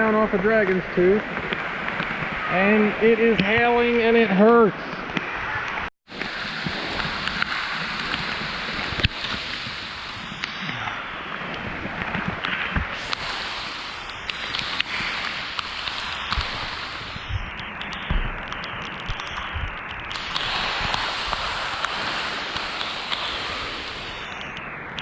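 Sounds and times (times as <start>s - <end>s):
falling hail and rain hiss: 6.1s - 24.6s
hailstones striking: 11.9s - 24.3s.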